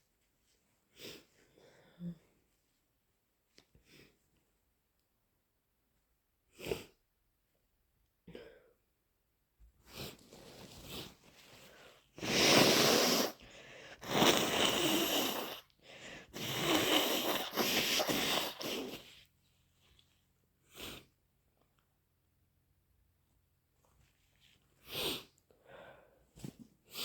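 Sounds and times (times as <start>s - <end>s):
quiet breathing: 9.8s - 20.0s, 24.4s - 27.0s
short nasal burst: 12.2s - 13.4s, 14.0s - 15.7s, 16.4s - 19.0s
person blowing nose: 12.2s - 19.2s.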